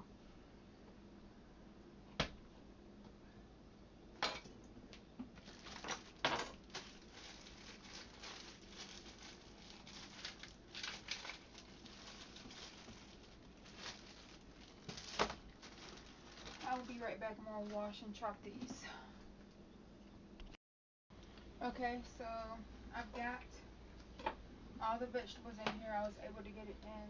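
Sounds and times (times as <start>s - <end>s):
papery rustling: 5.4s - 17.9s.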